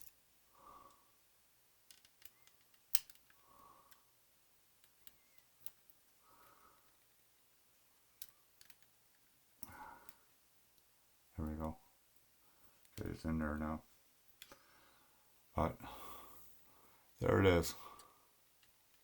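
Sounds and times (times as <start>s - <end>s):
plastic parts clicking into place: 1.8s - 4.0s.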